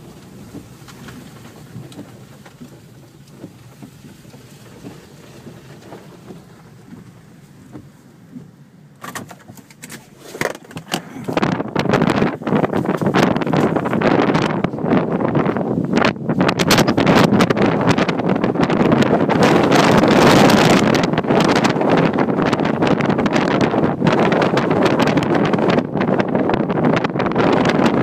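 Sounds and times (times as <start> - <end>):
light rain: 0.0 - 8.2
wind buffeting microphone: 0.0 - 28.0.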